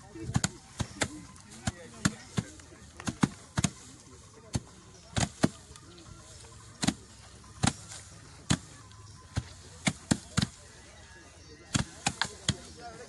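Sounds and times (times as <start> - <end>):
sticks beating grain: 0.0 - 13.0.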